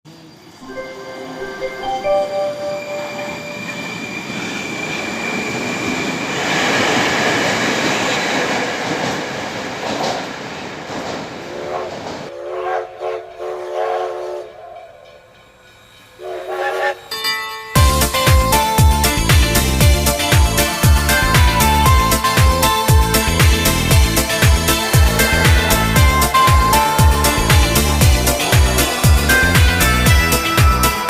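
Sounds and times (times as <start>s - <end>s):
train wagons rolling: 2.1s - 31.0s
train horn: 11.6s - 15.2s, 16.2s - 17.1s, 20.1s - 31.0s.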